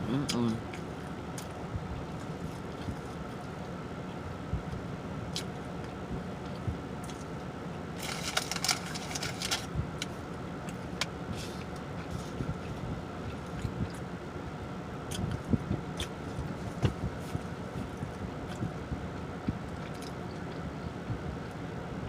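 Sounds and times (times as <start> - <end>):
car interior hum: 0.0 - 22.0
chewing and lip smacking: 5.3 - 7.5, 10.6 - 14.1, 15.0 - 18.8, 19.4 - 20.9.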